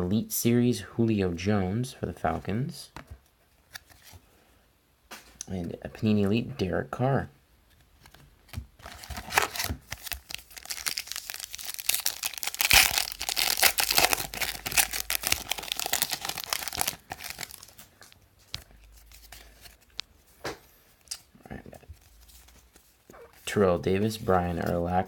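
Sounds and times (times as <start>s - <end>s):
plastic wrapper tearing and crinkling: 8.8s - 20.1s.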